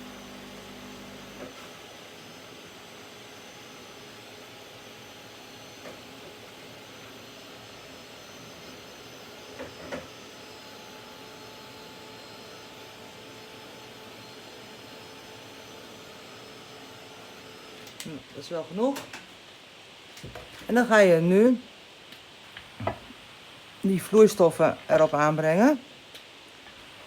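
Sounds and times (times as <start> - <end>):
heat tool blowing: 0.0 - 18.1.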